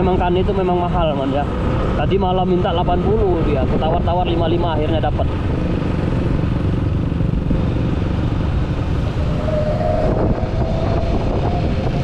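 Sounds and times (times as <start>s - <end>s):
road and wind noise: 0.0s - 12.0s
motorcycle engine running: 5.3s - 12.0s.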